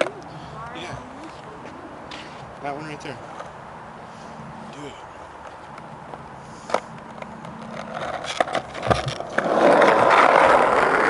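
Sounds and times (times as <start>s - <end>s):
skateboard rolling: 0.0s - 0.2s, 5.4s - 11.0s
skateboard clacks: 6.7s - 11.0s.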